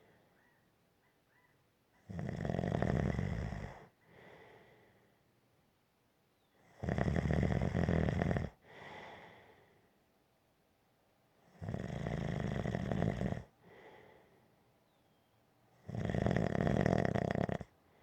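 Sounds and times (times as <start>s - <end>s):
quiet breath: 3.6s - 5.4s, 8.5s - 10.1s, 13.4s - 15.2s, 17.7s - 18.0s
person snoring: 15.9s - 17.7s.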